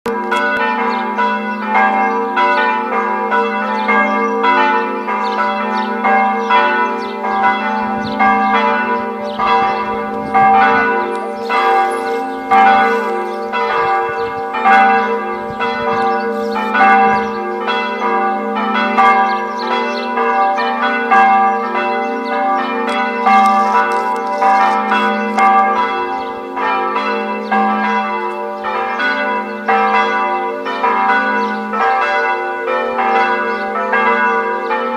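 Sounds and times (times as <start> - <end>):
church bells pealing: 0.1 - 34.9
deep bell hum: 7.8 - 17.6.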